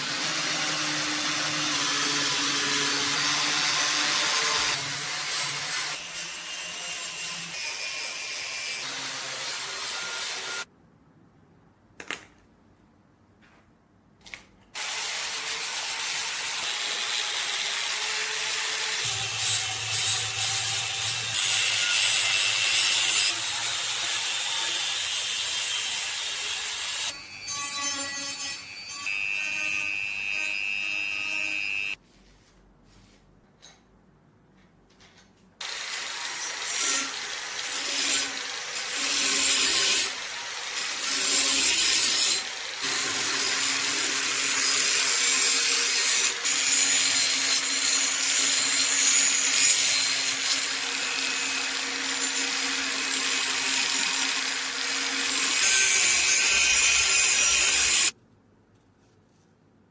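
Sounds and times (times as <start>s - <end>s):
powered tool scraping: 14.8s - 32.0s, 35.6s - 58.2s.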